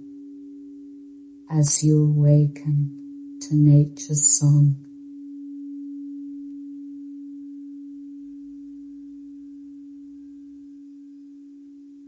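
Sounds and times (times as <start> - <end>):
steady meditation tone: 0.0 - 12.0.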